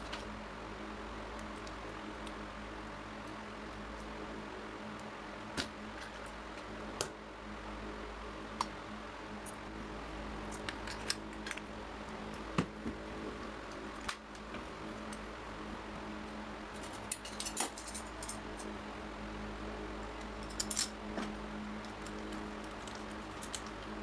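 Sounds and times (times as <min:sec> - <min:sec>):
low electrical hum: 0:00.0 - 0:24.0
small metal parts clinking: 0:16.8 - 0:18.7, 0:20.4 - 0:21.0.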